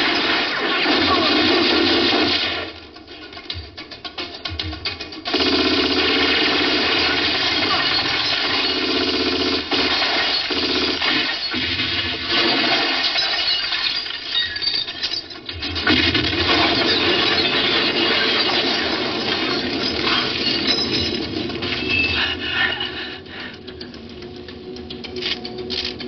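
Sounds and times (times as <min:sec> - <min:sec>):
action film music: 0:01.0 - 0:12.7, 0:18.1 - 0:26.0
crashing and clattering debris: 0:06.7 - 0:22.0.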